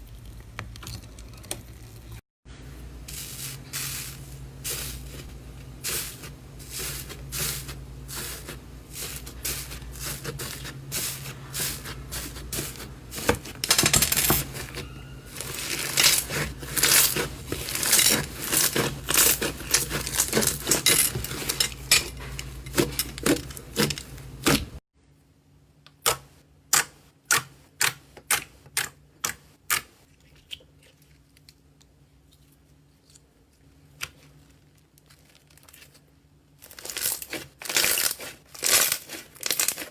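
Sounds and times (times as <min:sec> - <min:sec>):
slime popping and crackling: 0:36.6 - 0:39.9.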